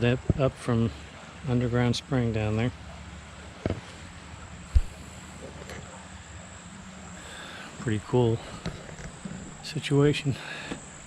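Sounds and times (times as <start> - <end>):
high insect trill: 4.1 - 11.0.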